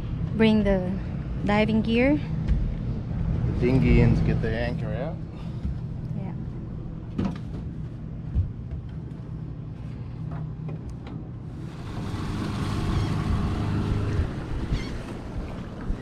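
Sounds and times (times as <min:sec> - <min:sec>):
boat motor running: 0:11.4 - 0:16.0
wind buffeting microphone: 0:11.5 - 0:16.0.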